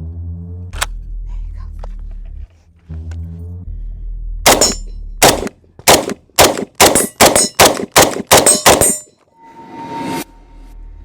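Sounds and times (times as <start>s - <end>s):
high metallic ringing: 4.5s - 5.0s, 6.8s - 7.7s, 8.3s - 9.6s
rifle shots: 4.5s - 9.1s.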